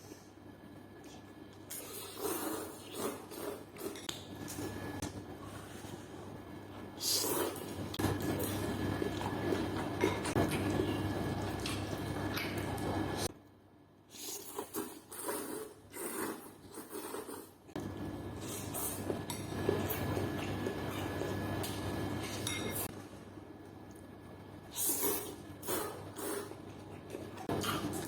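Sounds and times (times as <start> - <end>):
wet squishing of food stirred: 6.8 - 13.3.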